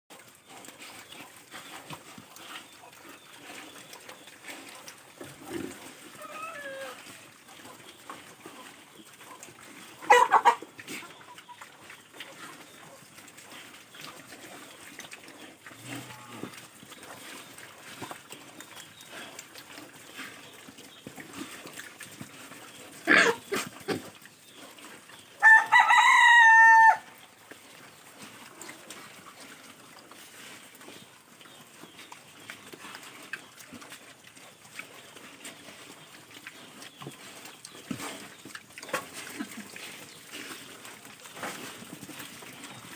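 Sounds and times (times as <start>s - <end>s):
farmyard background: 0.1s - 42.9s
rooster crowing: 25.4s - 27.1s.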